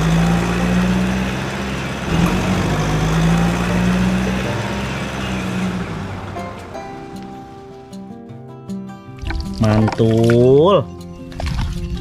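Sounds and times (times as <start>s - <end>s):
vehicle engine running: 0.0s - 8.2s.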